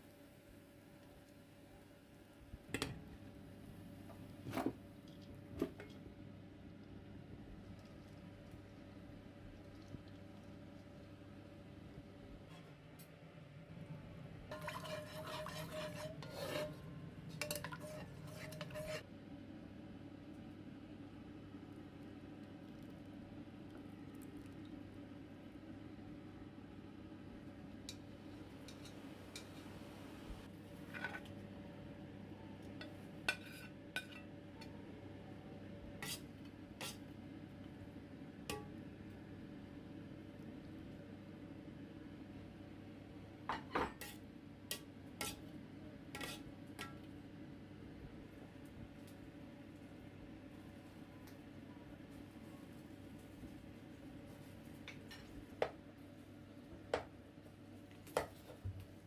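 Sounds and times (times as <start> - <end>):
metal spoon scraping a pot: 14.5 - 19.0, 36.0 - 37.0, 45.2 - 45.4, 46.1 - 46.9
cookware clinking: 17.4 - 19.0.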